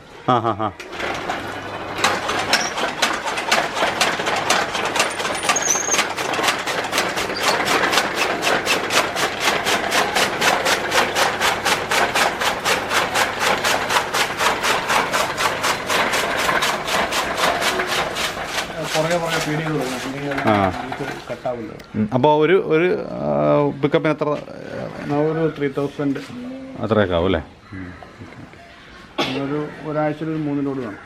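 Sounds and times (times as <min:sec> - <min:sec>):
chaff cutter blades chopping: 0:00.8 - 0:21.4
motor hum: 0:00.8 - 0:21.5.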